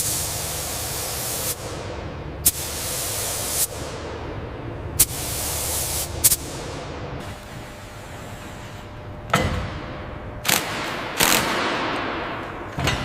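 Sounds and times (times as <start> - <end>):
pressurised spraying hiss: 0.0 - 1.8, 2.4 - 3.9, 5.0 - 6.6
steady low rumble: 0.0 - 8.4.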